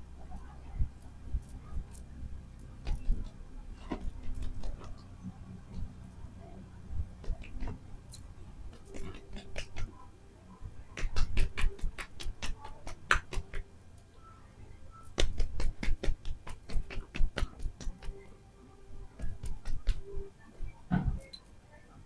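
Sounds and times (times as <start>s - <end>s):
hands tapping during massage: 2.8s - 3.3s, 3.9s - 5.0s, 7.2s - 7.8s, 8.7s - 10.0s, 11.0s - 13.7s, 15.0s - 18.2s, 19.2s - 20.2s.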